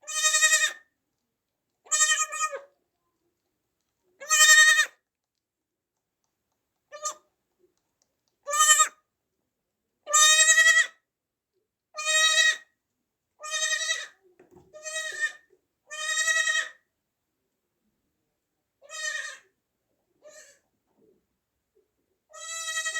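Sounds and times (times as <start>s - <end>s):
baby goat bleating: 0.0s - 0.9s, 1.9s - 2.7s, 4.2s - 5.0s, 6.9s - 7.2s, 8.5s - 9.0s, 10.1s - 11.0s, 12.0s - 12.7s, 13.4s - 16.8s, 18.8s - 19.5s, 20.2s - 20.6s, 22.3s - 22.9s.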